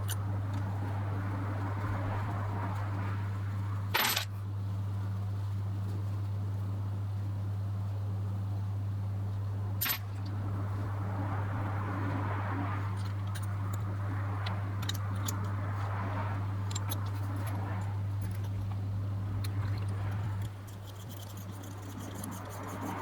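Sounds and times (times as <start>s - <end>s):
steady low hum: 0.0s - 23.0s
small metal parts being handled: 3.9s - 4.3s, 9.8s - 10.2s, 16.6s - 17.6s.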